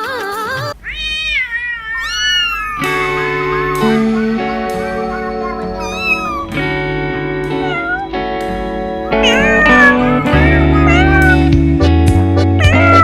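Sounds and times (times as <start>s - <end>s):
kitten meowing: 0.8s - 6.6s, 7.4s - 8.2s, 9.1s - 11.6s, 12.6s - 13.0s
background music of held chords: 2.8s - 13.0s.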